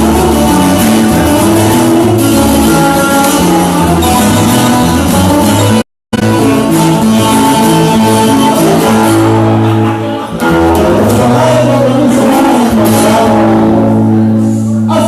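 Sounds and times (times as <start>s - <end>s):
low bass line: 0.0s - 15.0s
plucked and strummed guitars: 0.0s - 15.0s
person singing: 6.2s - 15.0s.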